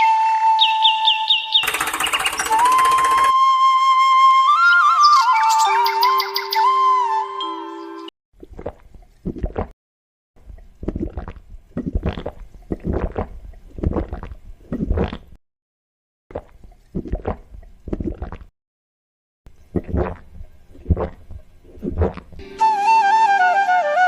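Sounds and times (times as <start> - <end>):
hand pump gurgling water: 1.6 - 3.4, 10.5 - 15.3.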